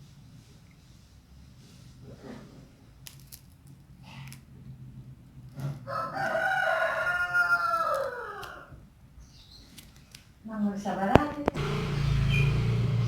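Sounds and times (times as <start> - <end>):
rooster crowing: 5.7 - 8.8.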